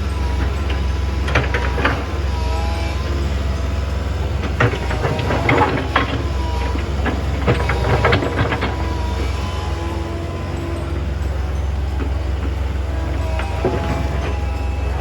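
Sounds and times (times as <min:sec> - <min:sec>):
excavator engine drone: 0:00.0 - 0:15.0
hydraulic whine: 0:00.0 - 0:15.0.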